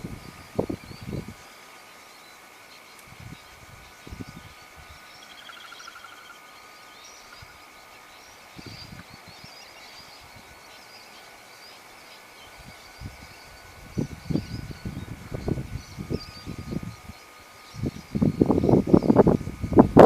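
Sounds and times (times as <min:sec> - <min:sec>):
birds chirping: 0:00.0 - 0:19.9
steady high-pitched whine: 0:00.0 - 0:20.0
bird trill: 0:04.9 - 0:12.3.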